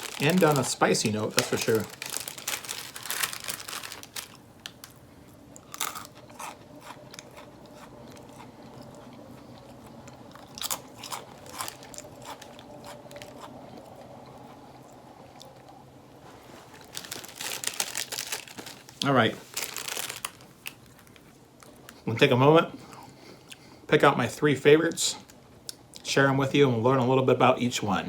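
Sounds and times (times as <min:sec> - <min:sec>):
person chewing crunchy crackers: 0:00.0 - 0:15.8, 0:16.8 - 0:22.1
faint steady hum: 0:00.0 - 0:28.0.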